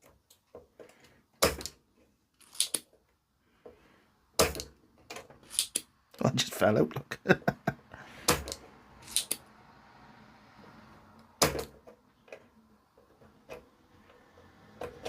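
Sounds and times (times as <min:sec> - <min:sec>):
tools clicking and knocking: 0:00.0 - 0:01.8, 0:02.4 - 0:03.8, 0:04.4 - 0:05.9, 0:08.3 - 0:09.4.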